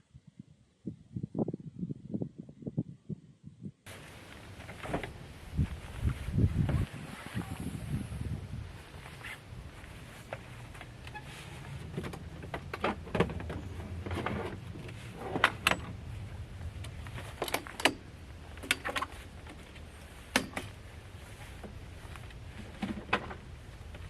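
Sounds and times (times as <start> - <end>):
low steady rumble: 0.0 - 24.0.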